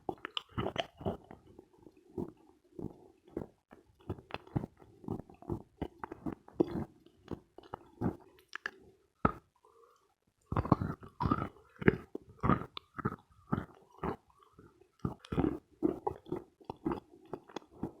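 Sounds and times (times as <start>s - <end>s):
chalk crunching while chewed: 0.1s - 1.5s, 3.4s - 8.8s, 15.0s - 18.0s.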